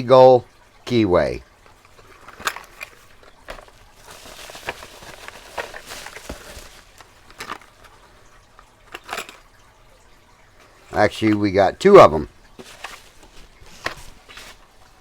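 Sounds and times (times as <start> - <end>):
packaging rustling: 1.7 - 9.5, 12.5 - 15.0
metal lock parts clicking: 8.9 - 9.5.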